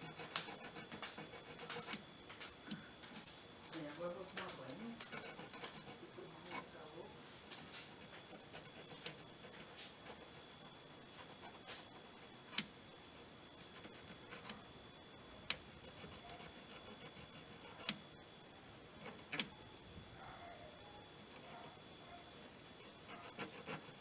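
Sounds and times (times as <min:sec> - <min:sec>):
scratchy scrapes: 0:22.4 - 0:24.0.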